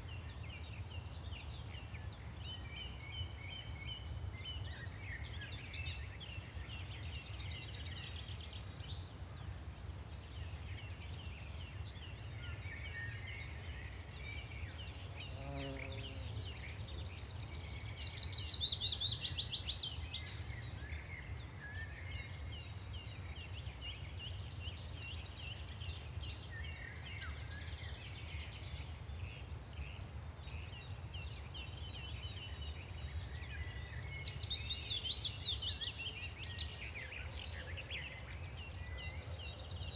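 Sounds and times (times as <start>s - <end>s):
songbirds chirping and singing: 0.0s - 39.9s.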